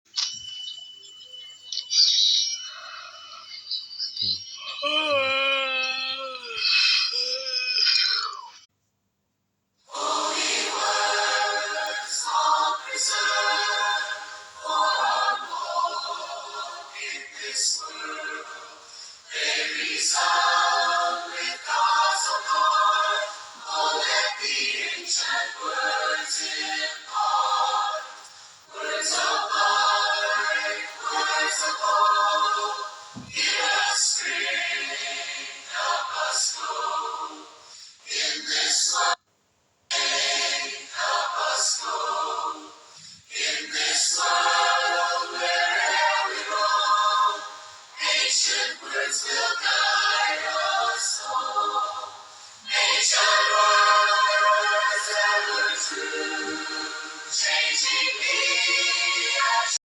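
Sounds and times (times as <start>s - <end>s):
sung vocal tones: 1.5s - 8.6s.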